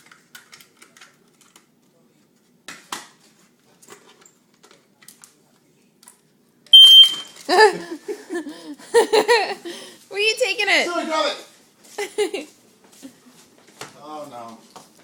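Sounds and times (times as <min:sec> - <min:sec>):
smoke detector beep: 0:06.8 - 0:07.4.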